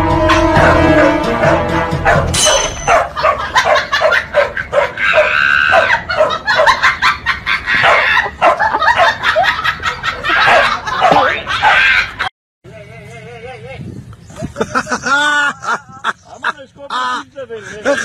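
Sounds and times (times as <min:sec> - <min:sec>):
dog barking: 0:02.0 - 0:06.9, 0:07.8 - 0:09.3, 0:10.4 - 0:12.0
dog high-pitched call: 0:02.1 - 0:06.3.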